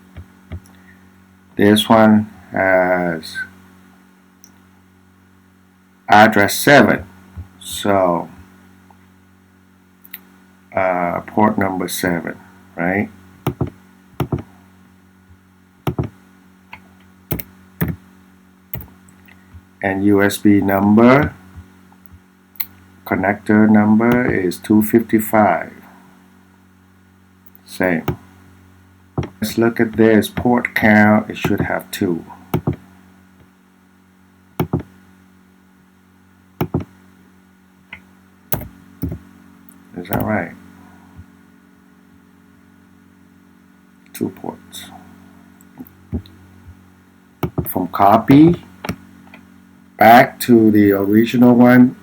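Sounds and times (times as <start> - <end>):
steady low hum: 0.0 - 52.0
computer control clicks: 38.6 - 39.2.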